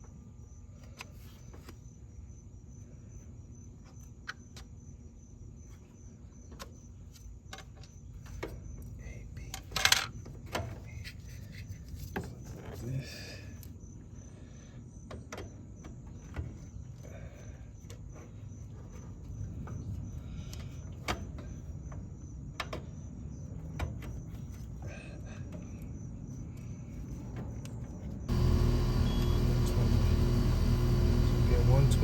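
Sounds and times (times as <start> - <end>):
loud steady hum with pitched tones: 28.3 - 32.0.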